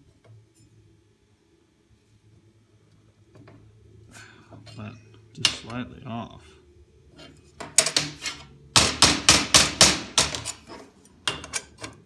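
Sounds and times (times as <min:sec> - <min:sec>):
hammer striking steel: 0:07.8 - 0:10.6.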